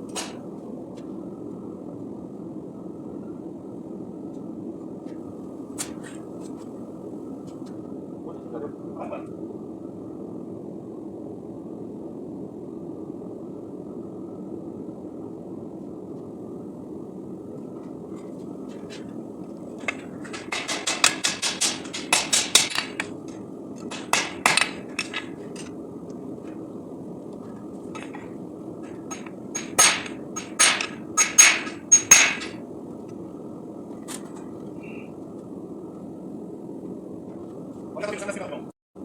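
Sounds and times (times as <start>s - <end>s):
hammer striking steel on anvil: 19.8s - 23.1s, 23.8s - 25.7s, 28.0s - 28.3s, 28.9s - 32.6s.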